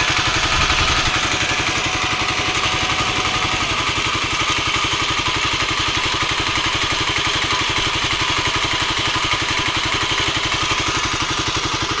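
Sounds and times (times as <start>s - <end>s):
mechanical clatter: 0.0s - 6.1s
motorcycle engine idling: 0.0s - 12.0s.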